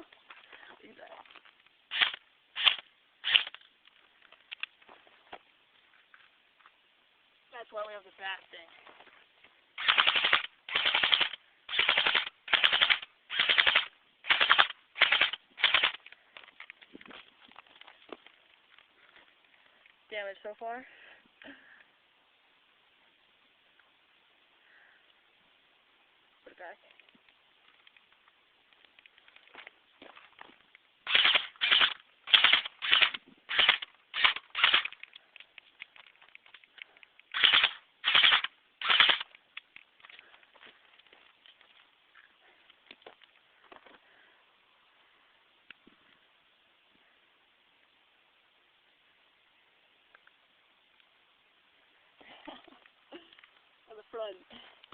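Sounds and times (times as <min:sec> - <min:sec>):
airsoft gun firing bursts: 0:01.9 - 0:03.6, 0:09.8 - 0:16.0, 0:31.0 - 0:34.9, 0:37.3 - 0:39.3.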